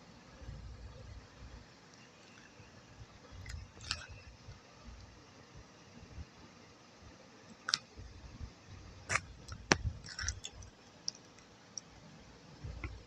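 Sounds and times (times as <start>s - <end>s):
soft chewing: 3.3s - 5.2s, 9.0s - 12.0s.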